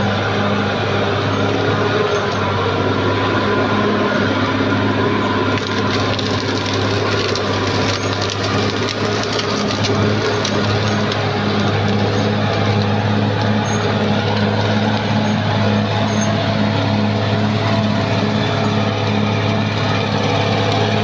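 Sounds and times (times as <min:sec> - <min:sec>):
bulldozer diesel engine running: 0:00.0 - 0:21.0
wood cracking and splintering: 0:04.5 - 0:21.0.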